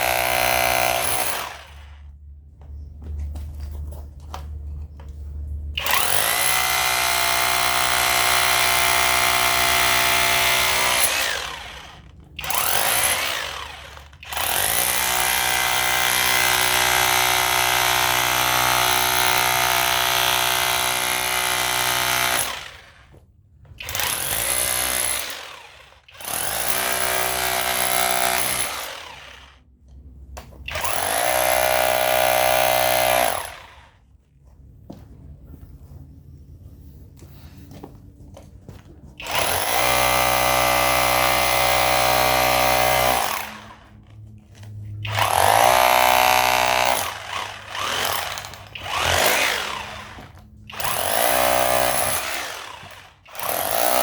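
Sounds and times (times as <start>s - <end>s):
rotary hammer breaking concrete: 0.0s - 1.8s, 5.8s - 22.8s, 23.8s - 29.4s, 39.2s - 43.9s, 45.1s - 54.0s.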